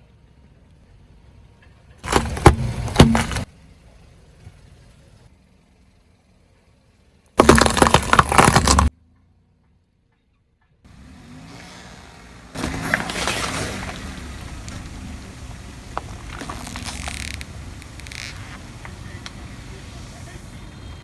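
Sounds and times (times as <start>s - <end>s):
tyre crushing brittle objects: 2.0s - 3.5s, 7.4s - 8.9s, 12.5s - 20.6s
car engine: 10.9s - 21.0s.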